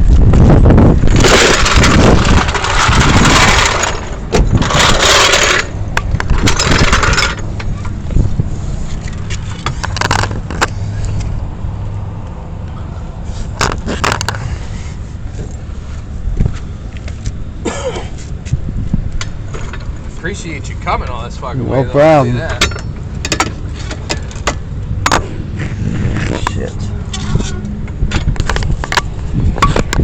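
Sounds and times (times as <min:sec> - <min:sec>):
metal scraping and clanking: 0:01.0 - 0:11.2, 0:22.0 - 0:30.0.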